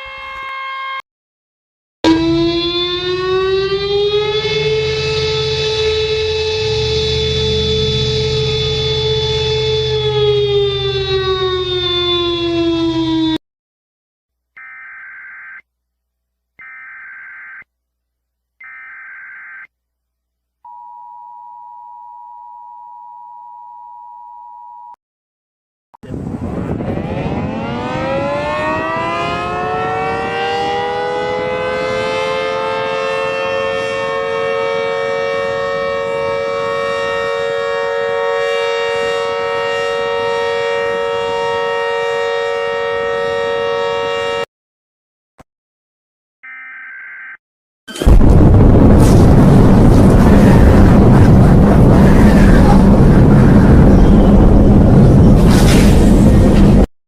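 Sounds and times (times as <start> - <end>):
civil defense siren: 0.0 - 1.0, 2.0 - 13.4, 14.6 - 15.6, 16.6 - 17.6, 18.6 - 19.7, 26.4 - 44.5, 48.1 - 55.5.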